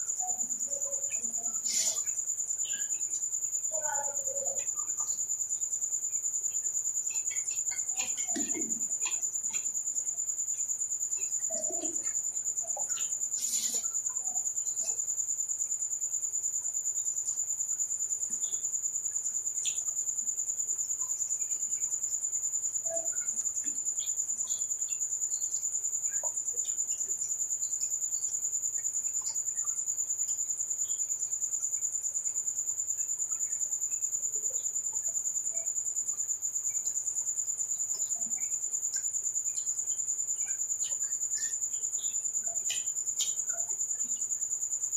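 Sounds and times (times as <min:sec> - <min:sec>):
crickets trilling: 0:00.0 - 0:44.9.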